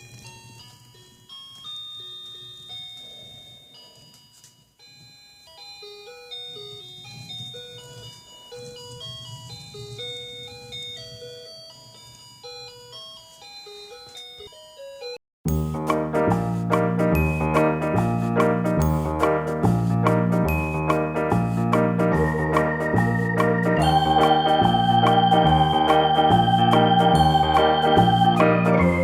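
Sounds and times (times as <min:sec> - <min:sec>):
tinkling jingle melody: 0:15.5 - 0:29.0.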